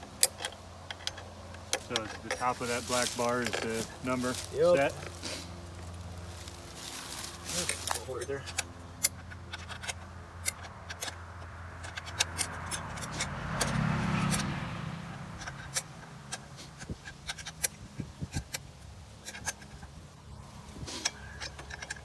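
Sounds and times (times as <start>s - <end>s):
vehicle passing: 0.0s - 22.0s.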